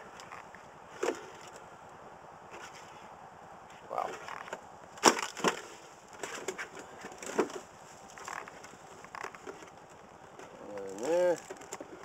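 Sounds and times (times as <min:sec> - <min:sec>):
plastic jug cracking and crinkling: 0:04.3 - 0:12.0.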